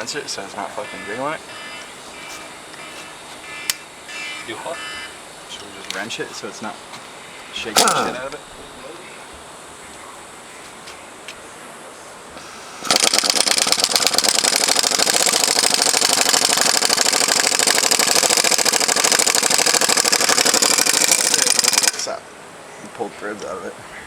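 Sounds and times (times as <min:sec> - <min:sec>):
impact wrench hammering: 0:12.8 - 0:22.1.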